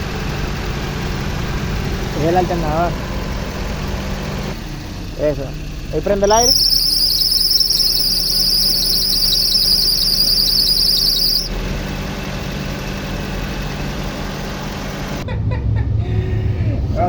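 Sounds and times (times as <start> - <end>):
belt squealing: 6.3 - 11.5.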